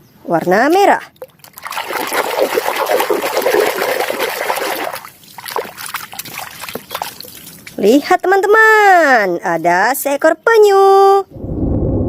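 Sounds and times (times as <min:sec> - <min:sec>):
water splashing and trickling: 0:00.4 - 0:09.8
water drips: 0:00.7 - 0:08.0.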